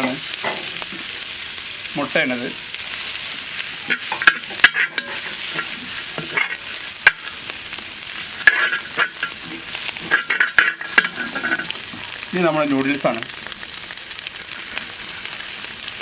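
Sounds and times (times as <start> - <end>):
food sizzling in hot oil: 0.0 - 16.0
spatula scraping a pan: 3.7 - 7.4, 8.0 - 12.2.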